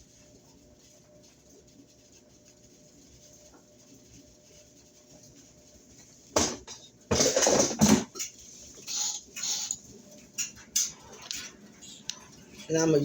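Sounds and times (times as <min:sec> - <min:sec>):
utensils and cookware clattering: 0:06.3 - 0:11.6.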